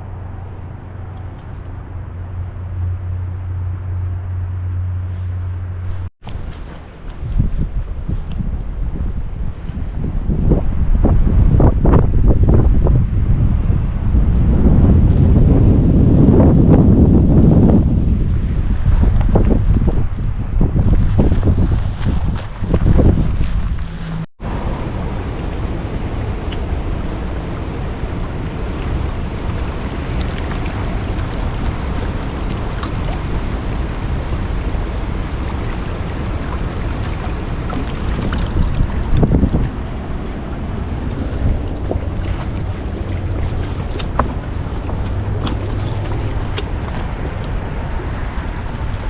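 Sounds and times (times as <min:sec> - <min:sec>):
wind blowing over microphone: 0:00.0 - 0:49.0.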